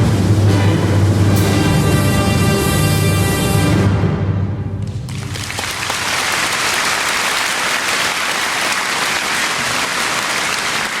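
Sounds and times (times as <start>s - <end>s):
audience applauding: 5.0s - 11.0s.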